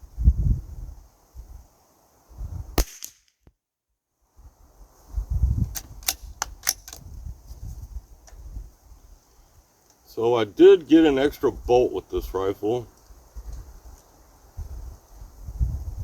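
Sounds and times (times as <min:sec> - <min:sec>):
wind rumbling on microphone: 0:00.0 - 0:01.7, 0:02.3 - 0:02.8, 0:04.4 - 0:16.0
rifle shot crack: 0:02.8 - 0:03.3
metallic clicks of rifle bolt: 0:05.6 - 0:07.1.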